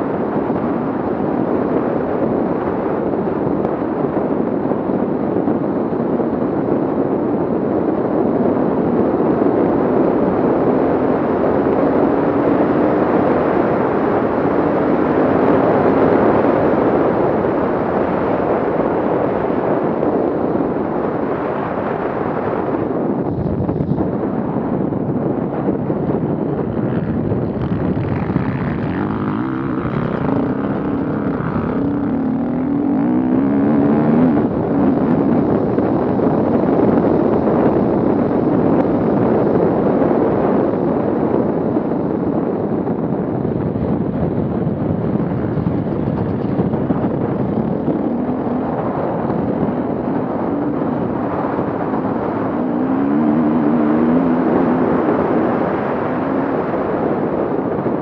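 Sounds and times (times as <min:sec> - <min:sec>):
off-road vehicle engine revving: 0:27.2 - 0:35.2.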